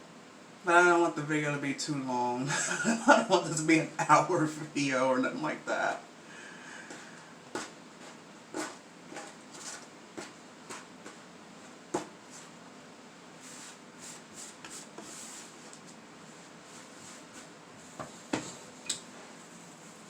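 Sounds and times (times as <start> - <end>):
hands scraping kinetic sand: 7.6 - 11.3, 13.4 - 18.0.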